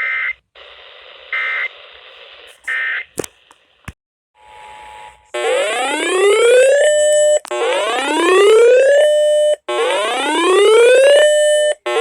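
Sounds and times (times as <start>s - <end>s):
electronic siren alert tone: 4.8s - 12.0s.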